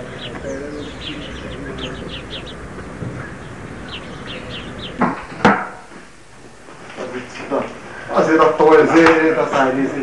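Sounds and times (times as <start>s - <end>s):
small birds chirping: 0.0s - 7.6s
loud sharp thumps: 4.7s - 6.0s.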